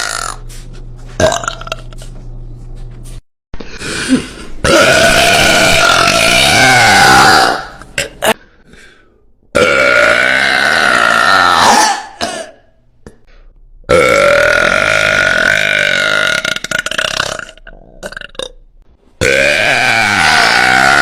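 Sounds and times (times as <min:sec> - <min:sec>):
woman burping loudly: 0:04.6 - 0:08.4, 0:09.6 - 0:12.6, 0:13.9 - 0:18.6, 0:19.2 - 0:21.0.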